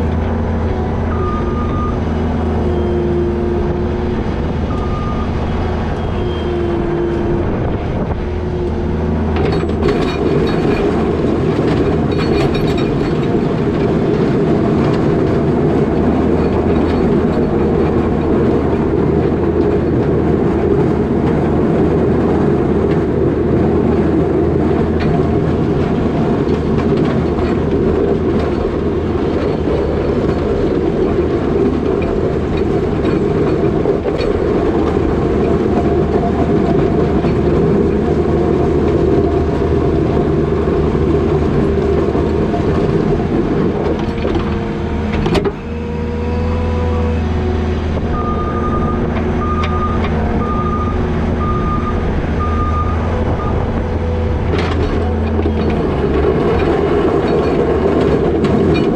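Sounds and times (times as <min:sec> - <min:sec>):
diesel engine under load: 0:00.0 - 0:58.9
plow scraping wet snow: 0:00.0 - 0:58.9
backup alarm beeping: 0:04.7 - 0:06.7, 0:48.2 - 0:53.8.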